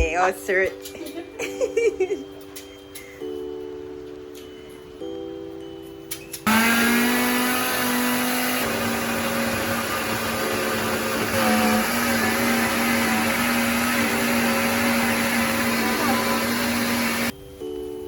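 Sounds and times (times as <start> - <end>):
electric blender grinding: 6.4 - 17.3.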